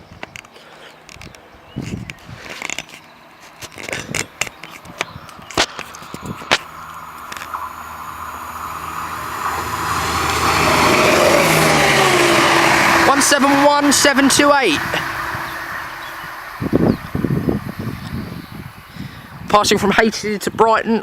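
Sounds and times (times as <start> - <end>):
vehicle engine hum and rushing: 3.2 - 19.6.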